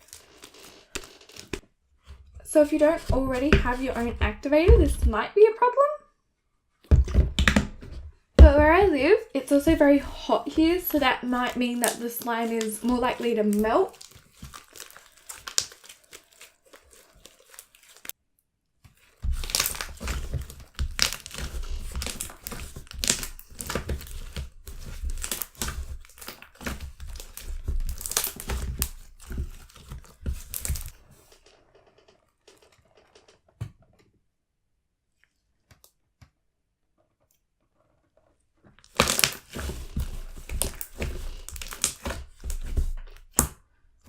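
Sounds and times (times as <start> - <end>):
slime crackling and popping: 8.7 - 18.2, 19.2 - 31.0, 38.8 - 43.5.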